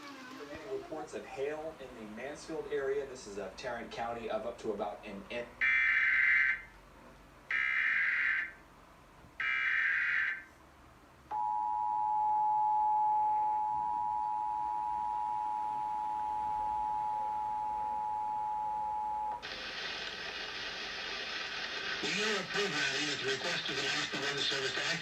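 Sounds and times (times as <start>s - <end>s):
two-tone attention signal: 11.3s - 19.4s.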